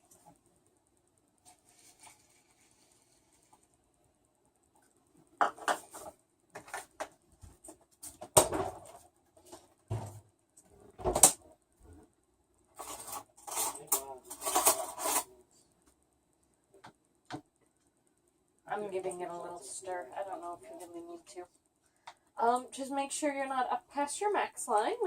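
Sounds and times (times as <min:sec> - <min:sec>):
plastic kitchenware clattering: 0:05.4 - 0:07.1, 0:12.8 - 0:15.3.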